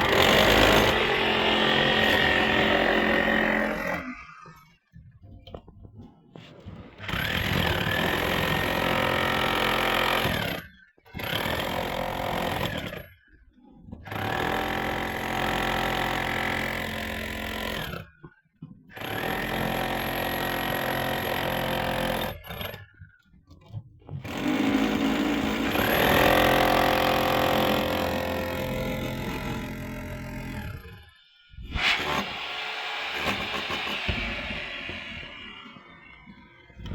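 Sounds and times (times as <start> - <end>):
power tool running in bursts: 0.0 - 4.2, 31.7 - 36.4.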